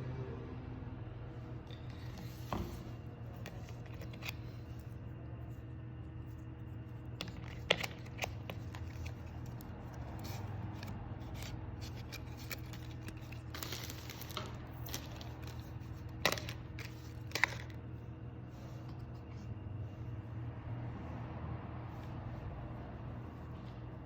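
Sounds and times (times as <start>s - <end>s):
steady low hum: 0.0s - 24.0s
packaging scraping and rustling: 1.9s - 4.9s, 7.2s - 17.8s.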